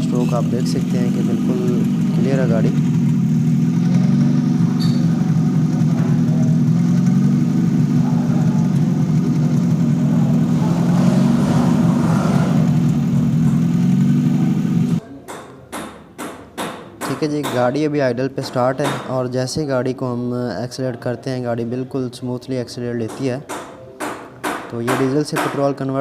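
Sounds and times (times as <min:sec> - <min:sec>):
car engine idling with open exhaust: 0:00.0 - 0:15.0.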